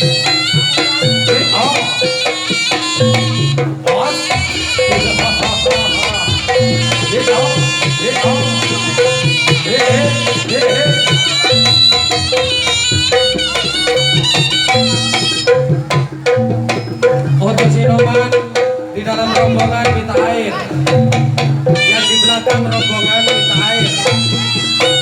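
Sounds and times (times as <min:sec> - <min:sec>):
shrill reed pipe melody: 0:00.0 - 0:16.2, 0:21.7 - 0:25.0
hand drums beat: 0:00.0 - 0:25.0.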